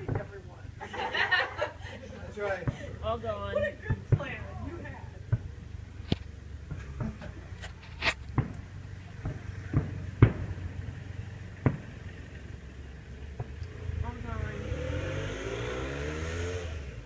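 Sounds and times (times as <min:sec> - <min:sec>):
sharp pops and thumps: 0:05.3 - 0:10.8, 0:11.5 - 0:12.2, 0:13.3 - 0:13.8.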